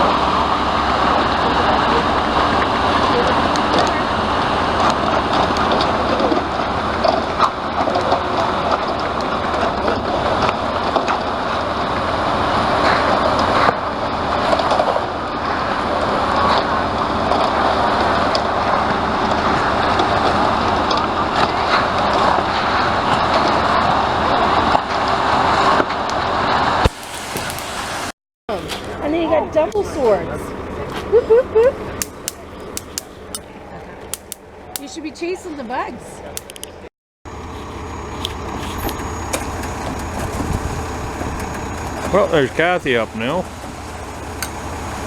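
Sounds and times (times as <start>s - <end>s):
diesel truck engine running: 0.0s - 45.0s
small clicks and knocks: 32.0s - 33.4s, 34.1s - 34.9s, 36.4s - 36.8s.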